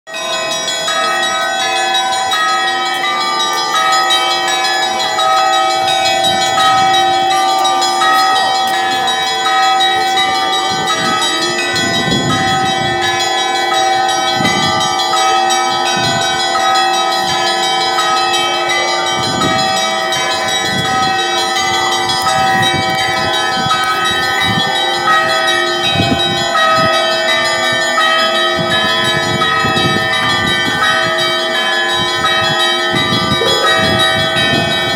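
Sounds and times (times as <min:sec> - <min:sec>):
church bells pealing: 0:00.1 - 0:34.9
deep bell strokes: 0:00.2 - 0:34.9.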